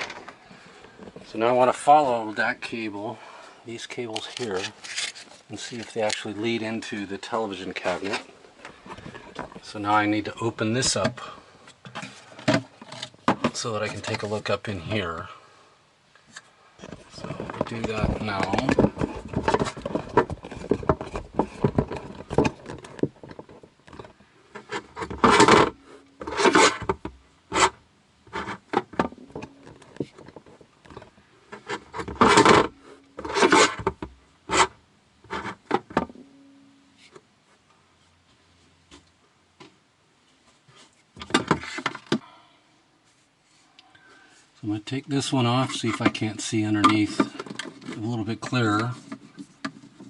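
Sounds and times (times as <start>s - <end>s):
wood rubbing scraping and knocking: 0.0s - 2.9s, 4.0s - 11.3s, 16.8s - 36.2s, 40.6s - 42.2s.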